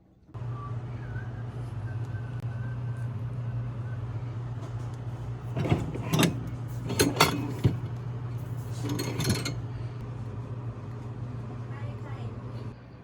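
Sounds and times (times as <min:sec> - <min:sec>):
steady low hum: 0:00.1 - 0:13.0
kitchenware clinking and knocking: 0:05.6 - 0:07.8, 0:08.8 - 0:09.6.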